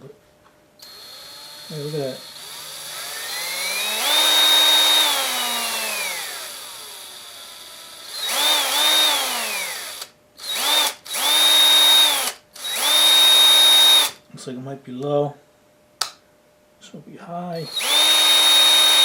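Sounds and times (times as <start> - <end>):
cordless drill motor whining: 0.8 - 14.2, 17.6 - 19.0.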